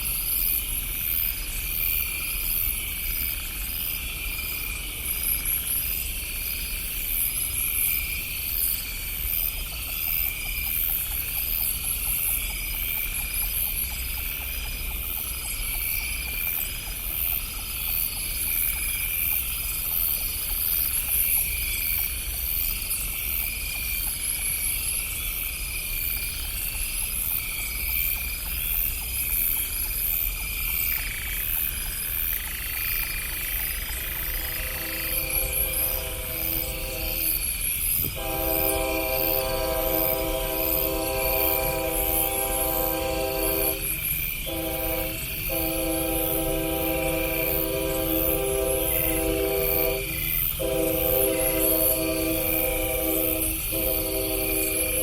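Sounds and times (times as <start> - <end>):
crickets trilling: 0.0 - 55.0
frogs croaking: 0.0 - 55.0
faint steady tone: 31.5 - 55.0.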